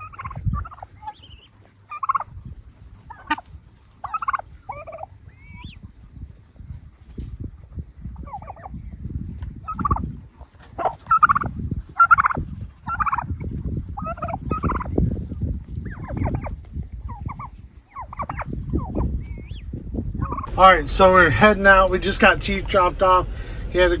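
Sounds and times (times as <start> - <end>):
turkey gobbling: 0.0 - 2.3, 3.0 - 6.1, 8.2 - 8.7, 9.7 - 13.3, 14.0 - 15.0, 15.8 - 21.2
low rumble: 18.6 - 24.0.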